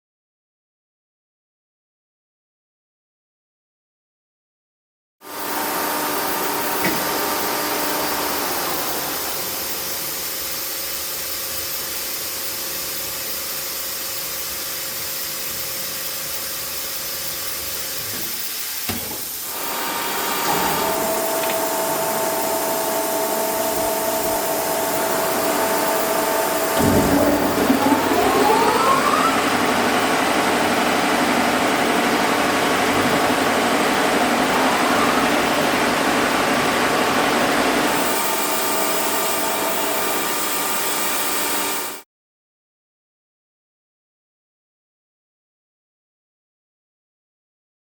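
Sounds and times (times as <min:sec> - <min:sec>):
motor rising whine: 0:19.5 - 0:40.2.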